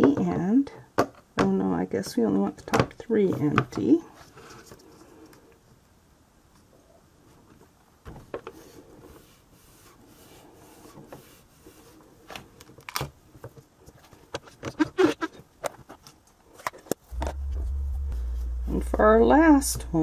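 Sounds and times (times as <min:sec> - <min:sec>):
low steady hum: 0:17.1 - 0:20.0.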